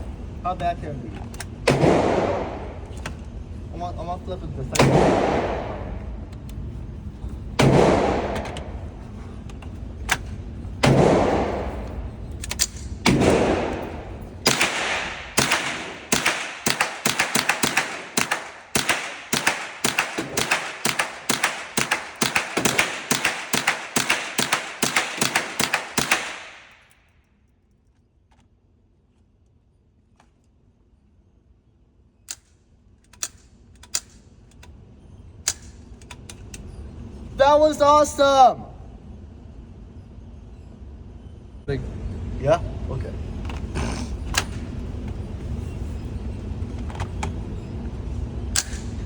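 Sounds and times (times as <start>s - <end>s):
bangs with long rumble: 1.6s - 26.0s.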